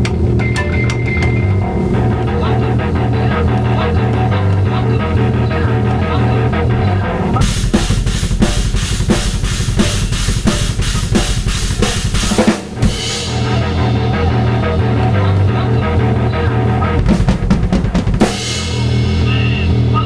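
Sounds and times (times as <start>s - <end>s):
cymbal hits: 7.4s - 14.7s
double bass kick drums: 7.4s - 15.0s, 16.8s - 20.0s
distorted guitar riff: 7.4s - 20.0s.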